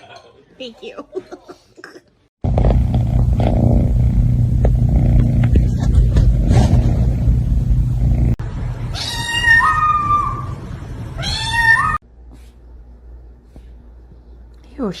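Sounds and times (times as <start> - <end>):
loud low rumble: 2.4 - 9.0
cat meowing: 8.9 - 10.6, 11.2 - 12.0.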